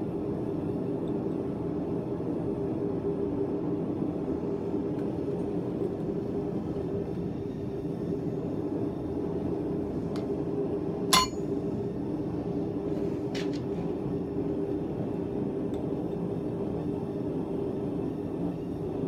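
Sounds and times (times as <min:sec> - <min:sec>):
metallic clink: 0:11.1 - 0:11.4.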